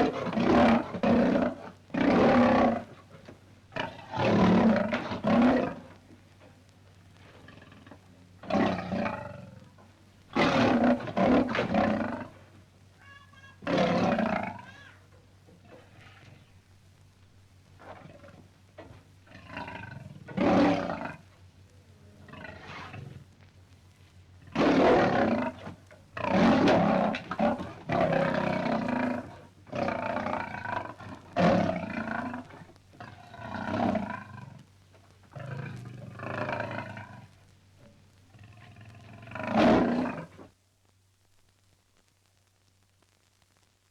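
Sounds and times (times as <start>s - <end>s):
lions roaring: 0.0s - 3.1s, 3.7s - 6.0s, 7.2s - 9.6s, 10.3s - 12.4s, 13.6s - 15.0s, 17.8s - 21.3s, 22.0s - 23.3s, 24.5s - 34.7s, 35.3s - 37.4s, 38.4s - 40.4s.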